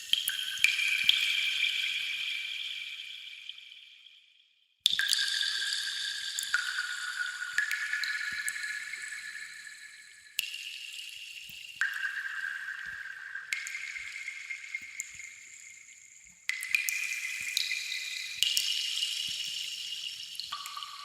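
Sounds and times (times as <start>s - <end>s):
water drips with ringing tone: 0.0s - 4.1s, 4.8s - 21.0s
faint ticks of drops: 11.4s - 21.0s.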